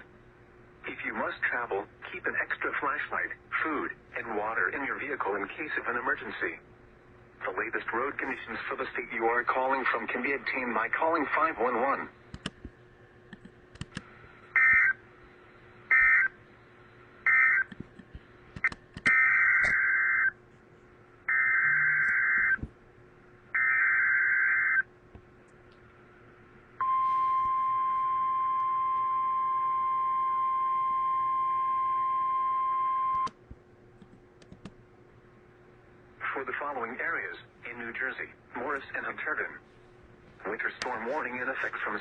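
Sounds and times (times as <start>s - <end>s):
steady alert tone: 21.3s - 22.6s.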